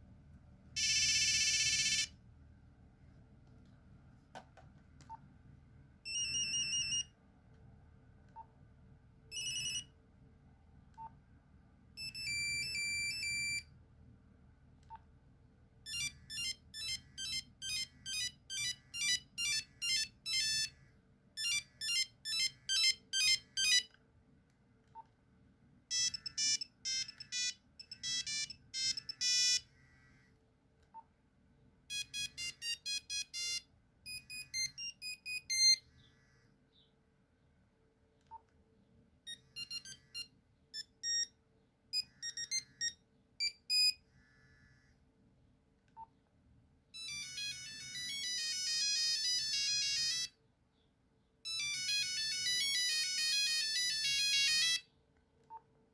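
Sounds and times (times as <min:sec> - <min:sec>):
mobile phone ringtones: 0:00.8 - 0:02.2, 0:06.0 - 0:07.2, 0:09.3 - 0:09.9, 0:12.0 - 0:13.7, 0:15.9 - 0:20.7, 0:21.4 - 0:23.9, 0:25.9 - 0:29.7, 0:31.9 - 0:35.8, 0:39.3 - 0:41.4, 0:42.0 - 0:44.0, 0:47.0 - 0:50.4, 0:51.4 - 0:54.9.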